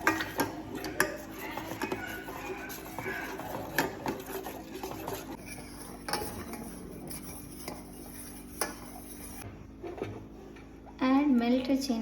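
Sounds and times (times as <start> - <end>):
spoon stirring in a pot: 0.0 - 9.5.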